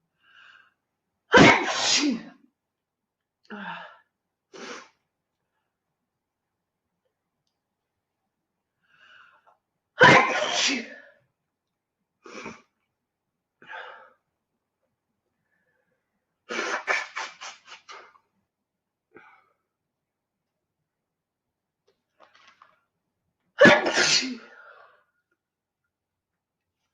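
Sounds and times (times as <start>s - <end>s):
woman sneezing: 1.3s - 2.3s, 10.0s - 11.0s, 16.5s - 18.1s, 23.6s - 24.5s
faint breath: 8.8s - 9.5s.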